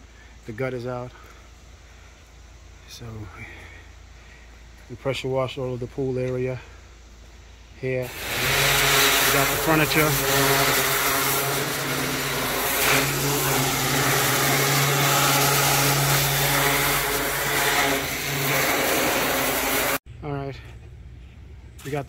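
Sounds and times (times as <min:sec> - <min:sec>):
pressure washer motor hum: 0:08.0 - 0:20.0
water spray hissing: 0:08.0 - 0:20.0.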